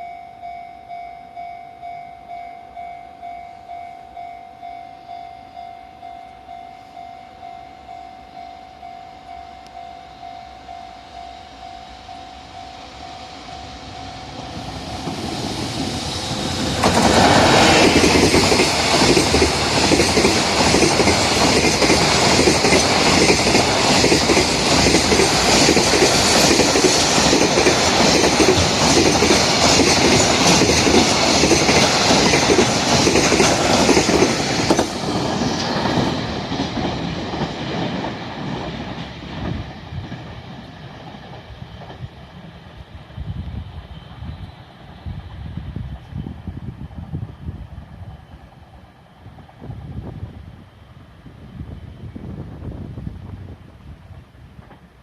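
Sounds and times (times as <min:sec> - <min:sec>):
level crossing warning bell: 0:00.0 - 0:14.8
freight train wheels rumbling: 0:07.4 - 0:55.0.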